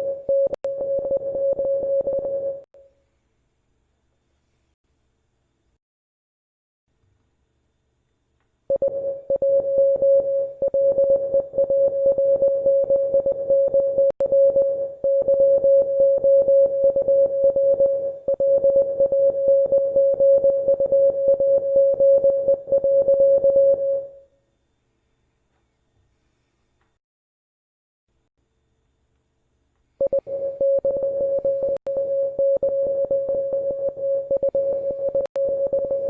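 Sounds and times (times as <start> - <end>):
morse code tone: 8.7 - 24.2, 30.0 - 36.0.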